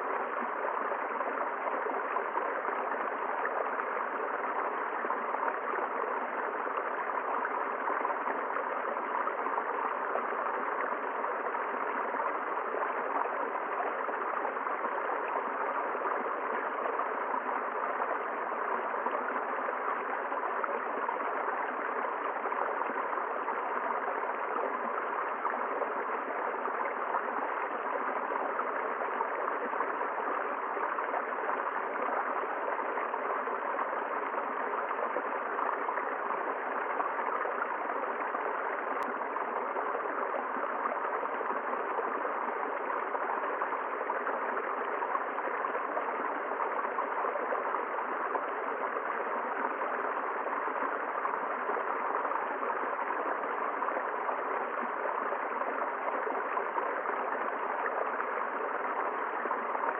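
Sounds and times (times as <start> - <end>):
river water flowing: 0.0 - 59.9.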